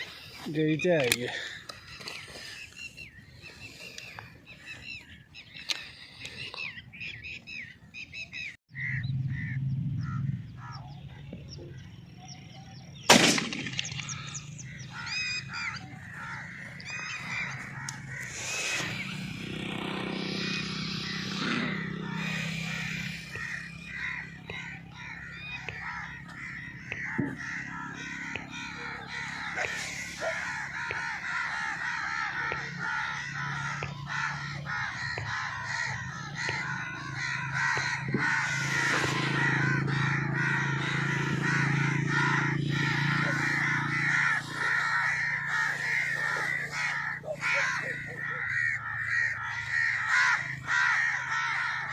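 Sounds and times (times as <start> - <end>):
birds calling and cawing: 0.0 - 51.9
shotgun shot: 13.1 - 14.2.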